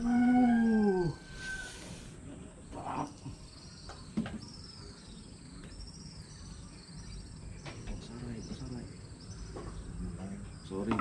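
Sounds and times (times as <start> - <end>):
insect buzzy call: 0.0 - 3.4.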